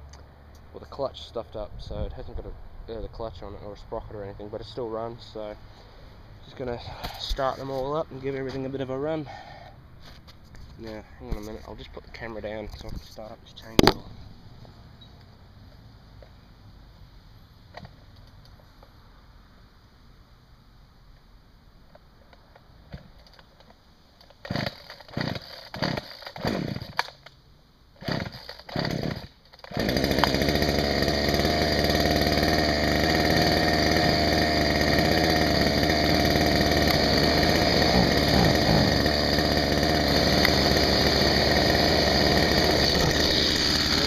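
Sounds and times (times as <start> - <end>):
chainsaw pull-start bursts: 24.2 - 27.2, 28.0 - 44.0
chainsaw running: 24.4 - 27.1, 28.0 - 44.0.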